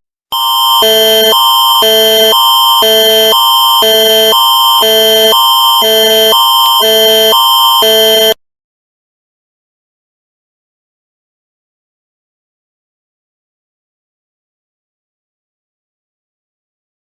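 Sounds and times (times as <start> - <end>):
electronic emergency alarm: 0.3 - 8.4
steady high tone: 0.3 - 8.4.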